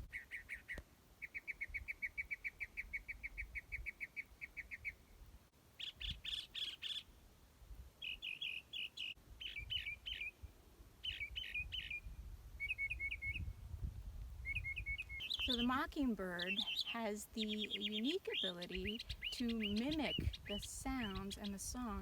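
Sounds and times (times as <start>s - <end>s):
mockingbird singing: 8.0s - 10.4s, 11.0s - 12.0s, 12.6s - 13.4s, 14.4s - 22.0s.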